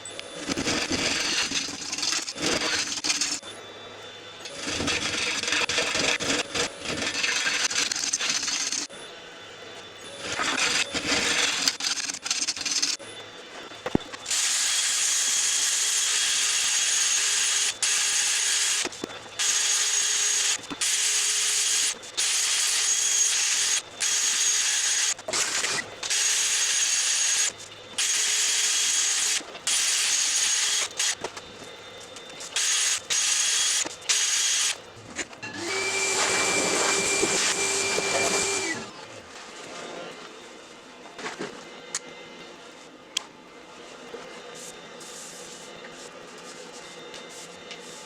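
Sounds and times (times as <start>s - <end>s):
power tool whining on wood: 0.0s - 41.0s.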